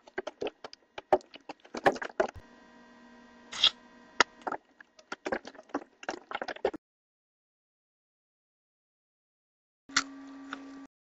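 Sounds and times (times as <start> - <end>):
faint steady hum: 1.9 - 5.4.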